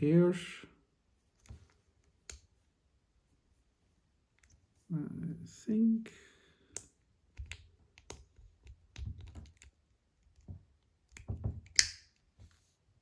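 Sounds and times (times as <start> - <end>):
plastic parts clicking and tapping: 6.7 - 12.0.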